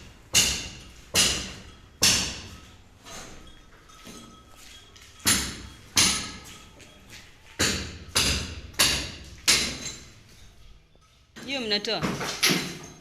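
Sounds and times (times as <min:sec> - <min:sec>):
hammer blows ringing: 0:00.0 - 0:10.2.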